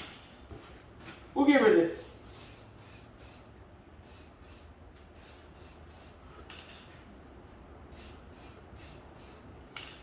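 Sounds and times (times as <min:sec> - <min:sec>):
spray paint can hissing: 0:02.4 - 0:06.2, 0:07.9 - 0:09.5.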